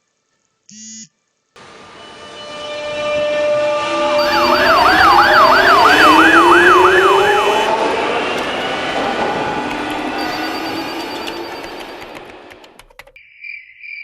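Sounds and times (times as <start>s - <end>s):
traffic noise: 1.8s - 12.8s
emergency vehicle siren yelping: 4.2s - 12.1s.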